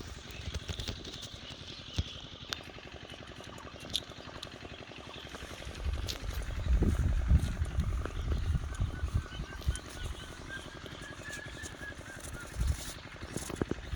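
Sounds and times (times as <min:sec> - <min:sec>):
small engine running: 0:00.0 - 0:13.9
low rumble: 0:05.4 - 0:10.7.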